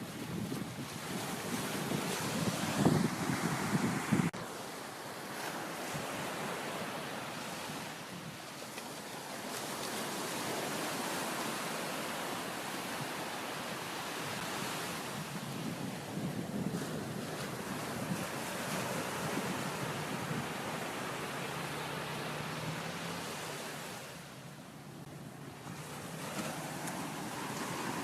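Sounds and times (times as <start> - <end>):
wind buffeting microphone: 0.0 - 4.4, 12.8 - 24.2
sea surf washing on shore: 0.0 - 28.0.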